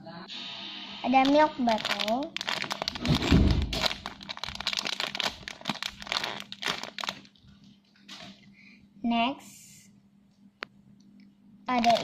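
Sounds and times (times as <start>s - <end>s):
plastic wrapper crinkling: 1.2s - 8.4s, 11.7s - 12.0s.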